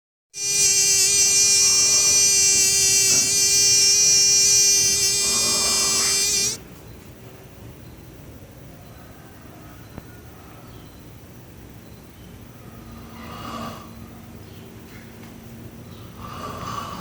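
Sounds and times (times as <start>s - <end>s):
loud high-pitched buzz: 0.4s - 6.6s.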